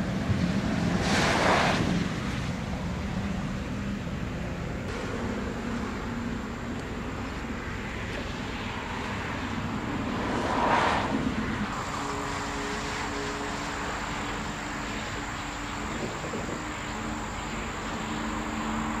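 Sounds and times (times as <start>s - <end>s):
low engine hum: 0.0s - 19.0s
outdoor background noise: 0.0s - 19.0s
vehicle passing whoosh: 0.4s - 2.6s, 7.6s - 17.3s.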